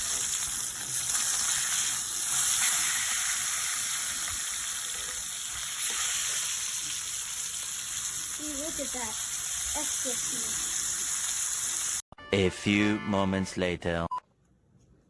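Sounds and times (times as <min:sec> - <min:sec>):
steak sizzling in a skillet: 0:00.0 - 0:12.0.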